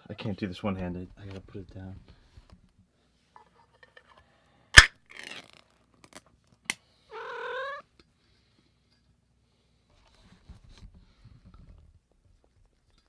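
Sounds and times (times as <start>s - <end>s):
can seal popping: 4.8s - 5.6s
can lid tearing: 4.8s - 5.7s
cat meowing: 7.1s - 7.8s.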